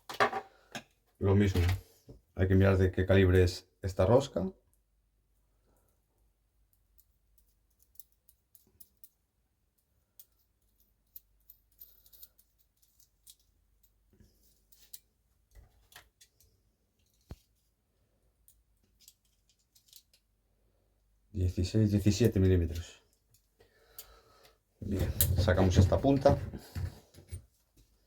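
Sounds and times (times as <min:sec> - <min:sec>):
small tools clicking and tapping: 0:06.7 - 0:09.2, 0:09.8 - 0:17.4, 0:18.4 - 0:20.3.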